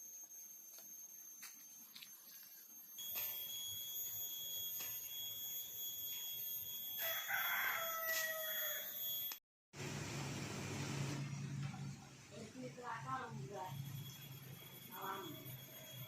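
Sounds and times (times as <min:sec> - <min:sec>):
high-pitched ringing: 0:00.0 - 0:09.4, 0:11.2 - 0:16.0
rooster crowing: 0:07.0 - 0:09.0.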